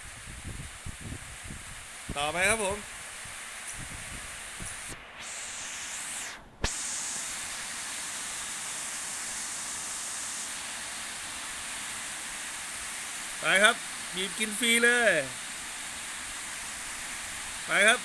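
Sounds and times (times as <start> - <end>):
heavy rain falling: 6.7 - 18.0.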